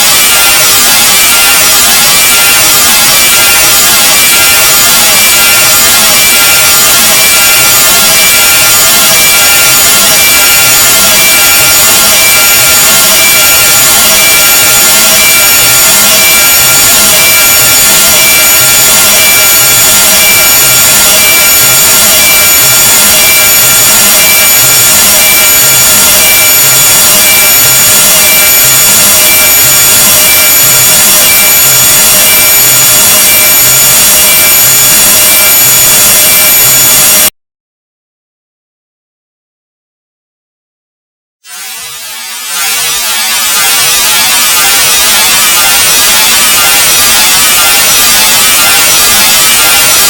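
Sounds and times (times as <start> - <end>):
high-pitched whines: 0.0 - 37.3, 41.5 - 50.0
harsh grating noise: 41.4 - 50.0.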